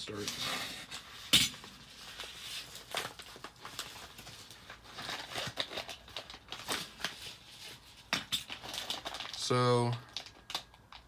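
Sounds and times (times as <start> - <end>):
plastic packaging crinkling: 1.8 - 11.0.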